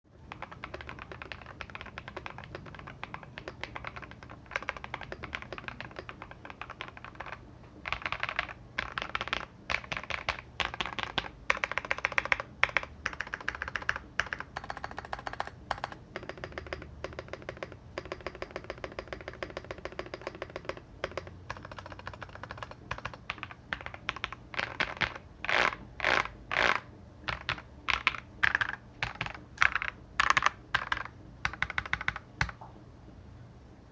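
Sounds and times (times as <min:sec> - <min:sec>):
typing on mechanical keyboard: 0:00.2 - 0:32.6.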